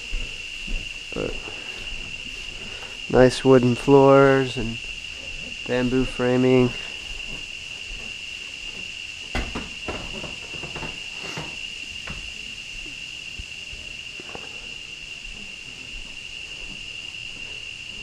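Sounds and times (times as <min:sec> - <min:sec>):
footsteps on wooden floor: 0:00.0 - 0:02.8, 0:06.8 - 0:17.5
high-pitched insect drone: 0:00.0 - 0:18.0.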